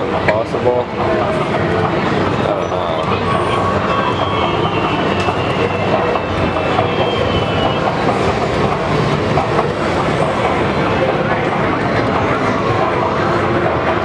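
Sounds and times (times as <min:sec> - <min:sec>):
arcade game machine noise: 0:00.0 - 0:14.0.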